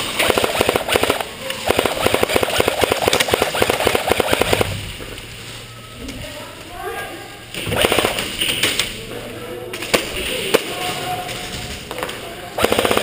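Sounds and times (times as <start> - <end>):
airsoft gun firing bursts: 0.0 - 4.8, 7.6 - 8.5, 12.6 - 13.0.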